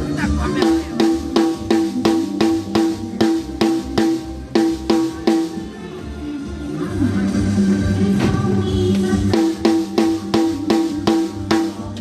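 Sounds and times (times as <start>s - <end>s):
drums with cymbal wash: 0.0s - 12.0s.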